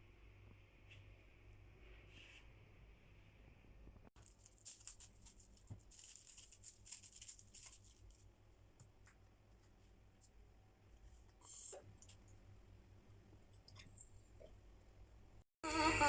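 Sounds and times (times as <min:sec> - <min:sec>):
faint crackling rustle: 0:04.2 - 0:08.4.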